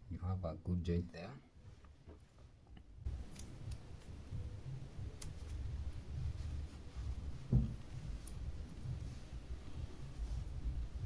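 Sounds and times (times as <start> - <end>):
short thump: 7.5 - 7.9.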